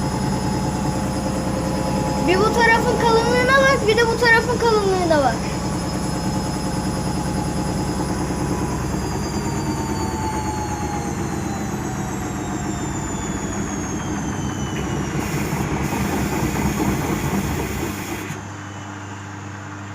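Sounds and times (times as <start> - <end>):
washing machine motor whine: 0.0 - 19.9.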